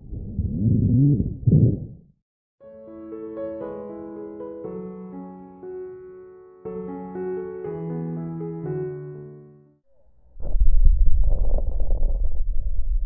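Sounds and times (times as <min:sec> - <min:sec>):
soft piano music: 0:02.6 - 0:09.8.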